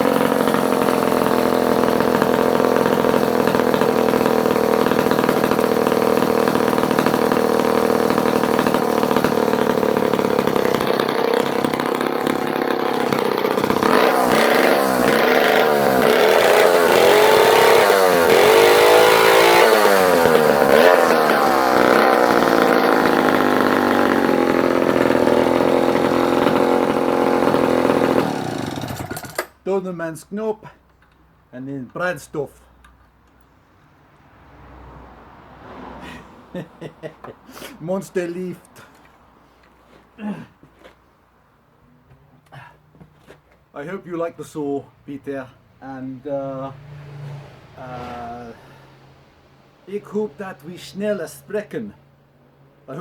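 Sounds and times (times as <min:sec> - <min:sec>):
chainsaw engine running and revving: 0:00.0 - 0:29.5.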